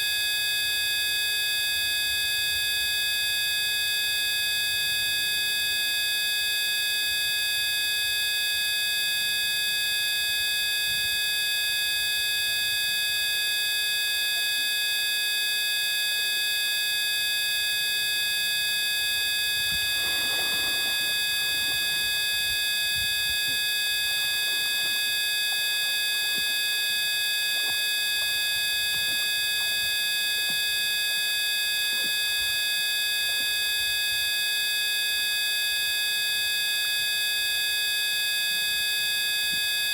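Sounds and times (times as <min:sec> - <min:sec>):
faint rustle: 0:19.4 - 0:26.6.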